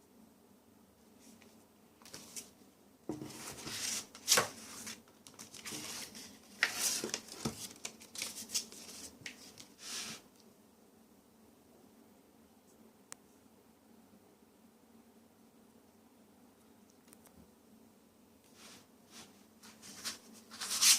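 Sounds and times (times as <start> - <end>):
packaging rustling and crinkling: 3.2 - 9.8.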